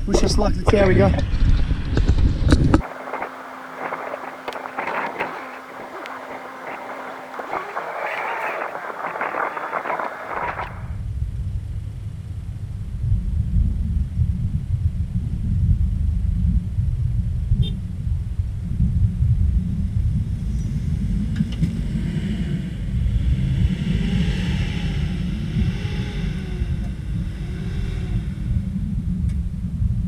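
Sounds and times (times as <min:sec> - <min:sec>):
heavy low rumble: 0:02.8 - 0:10.9
vehicle engine revving: 0:02.8 - 0:10.9, 0:23.4 - 0:28.9.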